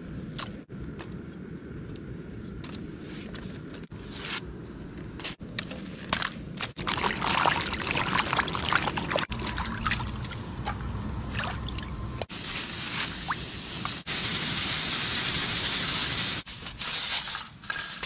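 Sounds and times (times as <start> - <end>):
water pouring and splashing: 6.1 - 14.1
water trickling: 6.8 - 12.1.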